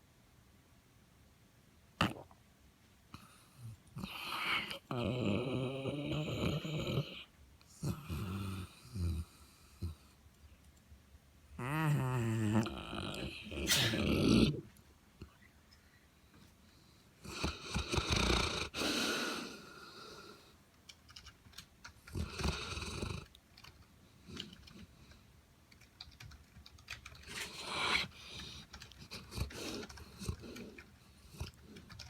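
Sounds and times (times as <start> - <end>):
dog snoring: 3.2 - 10.1, 11.6 - 14.6, 17.2 - 20.5, 22.0 - 23.4, 27.3 - 32.0
dog breathing: 16.7 - 20.5, 22.0 - 23.3, 27.2 - 32.0.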